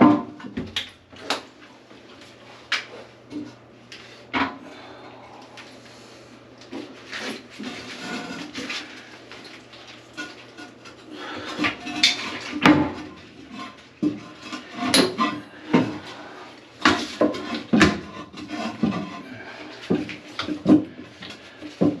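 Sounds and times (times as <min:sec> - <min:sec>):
hard objects knocking and clattering: 0:19.8 - 0:22.0.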